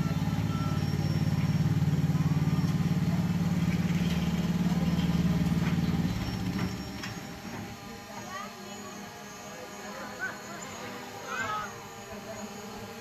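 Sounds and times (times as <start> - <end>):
lawnmower engine running: 0.0 - 13.0.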